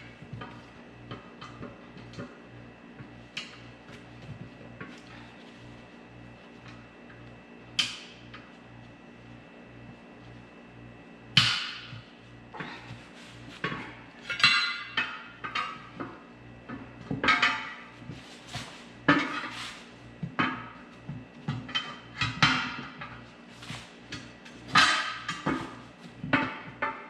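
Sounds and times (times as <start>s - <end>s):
steel tools clanking on wheel rim: 13.6s - 16.0s.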